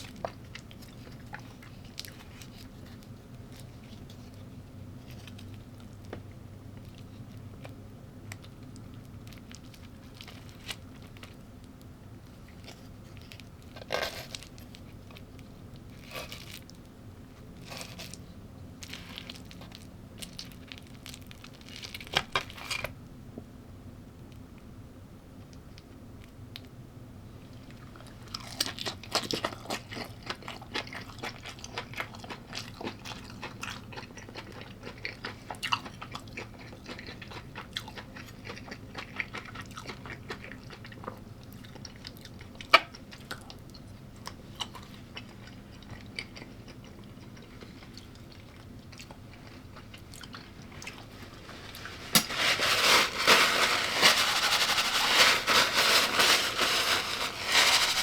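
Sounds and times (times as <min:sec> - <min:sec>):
person chewing crunchy food: 0:00.0 - 0:06.1, 0:27.7 - 0:58.0.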